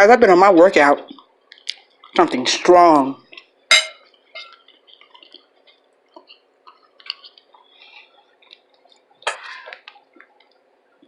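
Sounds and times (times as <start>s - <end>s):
chewing food mouth sounds: 1.1s - 2.2s, 3.2s - 10.6s.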